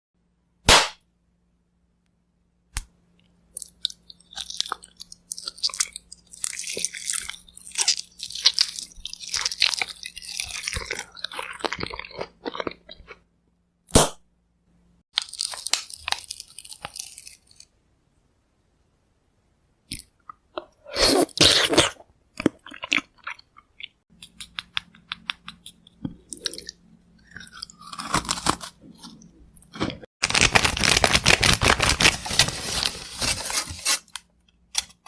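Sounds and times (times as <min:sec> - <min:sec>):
sharp candy snap: 0:00.6 - 0:01.0, 0:13.9 - 0:14.2
candy crunching while chewed: 0:03.6 - 0:13.3, 0:15.1 - 0:17.7, 0:19.9 - 0:35.0.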